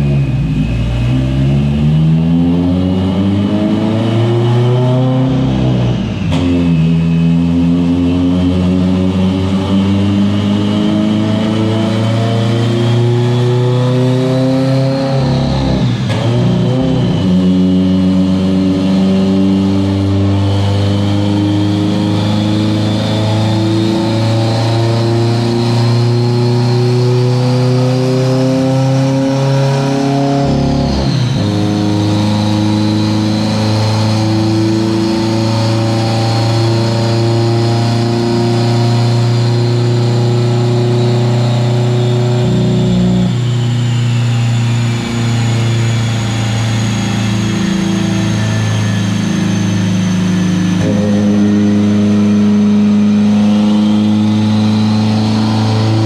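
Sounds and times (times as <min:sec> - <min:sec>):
car engine running under load: 0:00.0 - 0:56.0.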